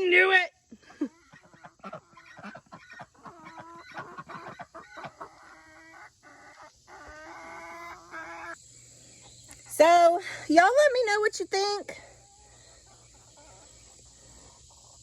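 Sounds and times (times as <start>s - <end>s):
young chickens clucking and calling: 0.8s - 9.6s, 12.0s - 15.0s.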